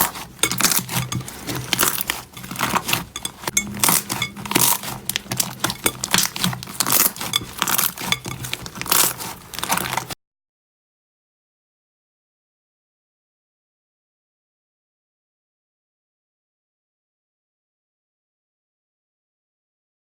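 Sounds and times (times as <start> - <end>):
slime squishing and crackling: 0.0 - 10.2.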